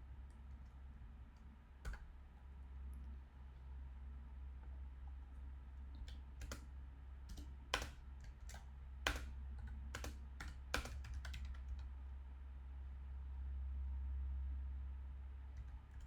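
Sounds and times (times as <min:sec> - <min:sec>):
steady low hum: 0:00.0 - 0:16.0
typing on computer keyboard: 0:01.8 - 0:02.2, 0:05.9 - 0:06.7, 0:07.3 - 0:11.9, 0:15.6 - 0:16.0.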